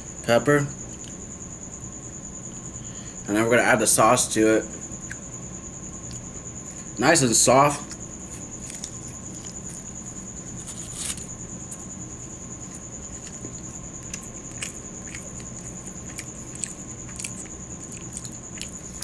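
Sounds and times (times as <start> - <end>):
cricket trilling: 0.0 - 19.0
person chewing soft food: 4.8 - 7.0, 7.7 - 19.0
short rustle: 10.6 - 11.3.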